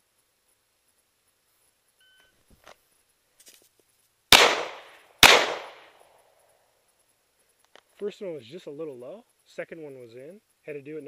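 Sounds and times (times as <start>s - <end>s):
faint rustle of drawing: 0.0s - 4.3s, 6.0s - 11.0s
handgun shots ringing: 4.3s - 5.9s.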